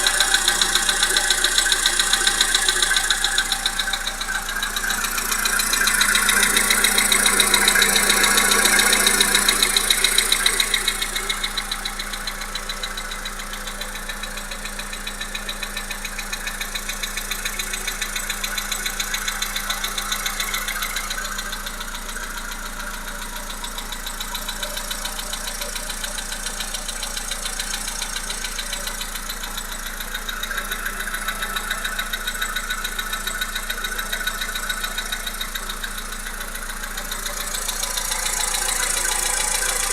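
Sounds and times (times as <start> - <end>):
car engine knocking: 0.0 - 39.9.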